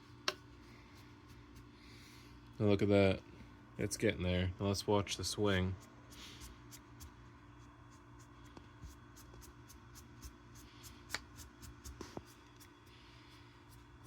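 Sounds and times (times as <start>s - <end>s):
steady low hum: 0.0s - 14.0s
brush rubbing feathers: 5.7s - 7.2s.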